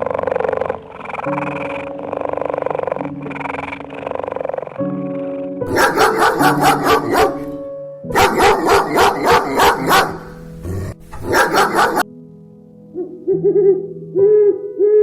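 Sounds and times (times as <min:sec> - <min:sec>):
background music: 0:00.0 - 0:15.0
dog barking: 0:05.6 - 0:12.0.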